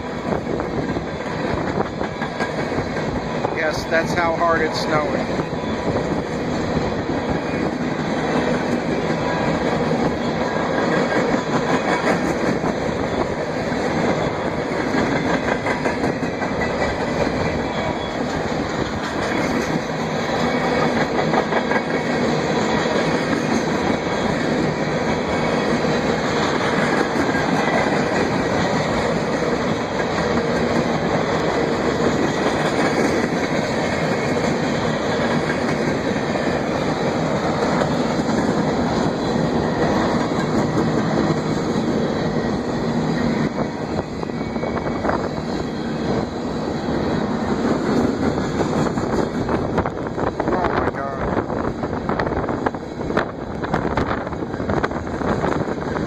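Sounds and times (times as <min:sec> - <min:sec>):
train wheels rushing on rails: 0:00.0 - 0:56.0
wheels clicking over rail joints: 0:07.6 - 0:42.0.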